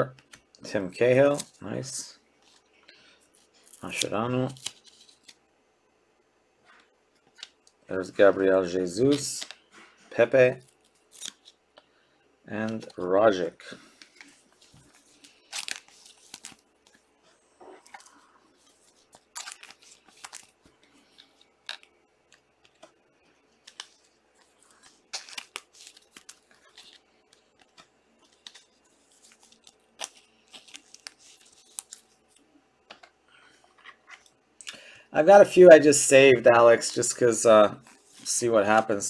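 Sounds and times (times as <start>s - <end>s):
wrappers tearing and rustling: 10.6s - 11.6s, 14.7s - 16.7s, 17.9s - 21.9s, 23.6s - 32.4s.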